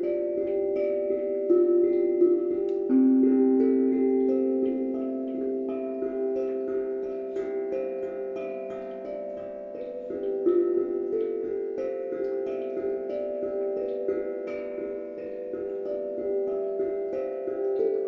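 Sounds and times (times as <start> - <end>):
calm music of ringing notes: 0.0 - 18.0.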